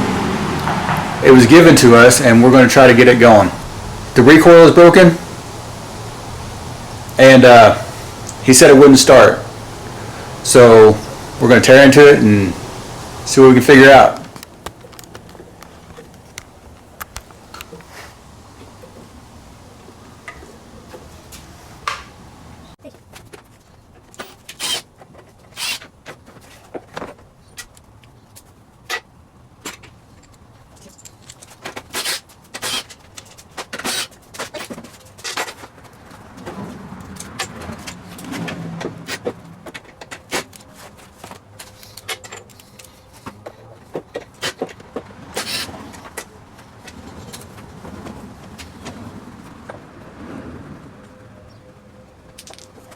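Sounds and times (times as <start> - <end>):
low rumble of mower being shifted: 0.0 - 22.8.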